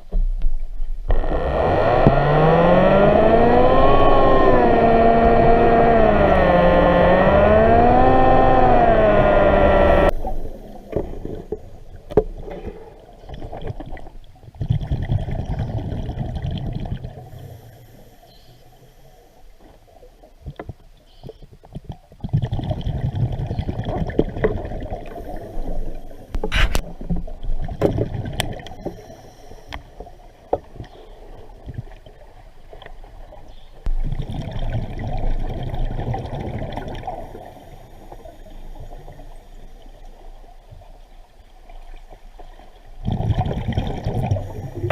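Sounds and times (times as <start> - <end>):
water sloshing and splashing: 10.1 - 17.4, 19.6 - 29.0, 30.0 - 38.4.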